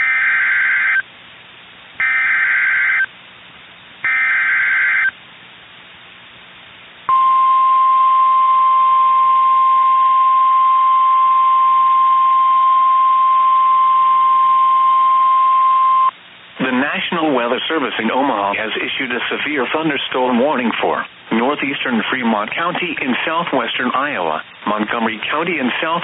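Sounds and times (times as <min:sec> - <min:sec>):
steady warning alarm tone: 0:00.0 - 0:01.0, 0:02.0 - 0:03.1, 0:04.0 - 0:05.1, 0:07.1 - 0:16.1.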